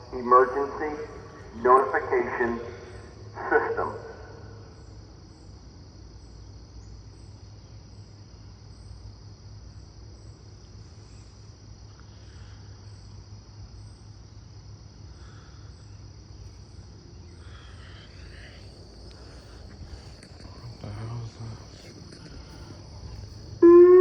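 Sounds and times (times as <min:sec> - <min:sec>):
insect chirps: 0:00.0 - 0:24.0
insects droning: 0:00.0 - 0:24.0
low rumble: 0:18.2 - 0:23.6.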